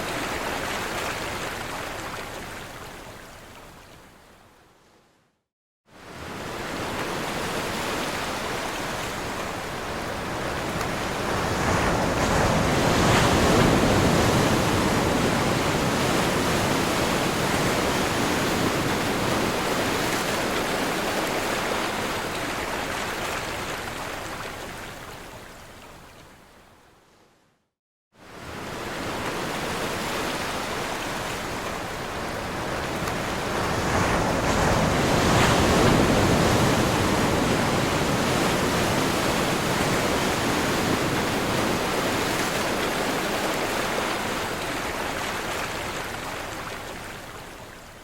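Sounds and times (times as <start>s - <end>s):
waves crashing: 6.1s - 24.1s, 28.3s - 47.1s.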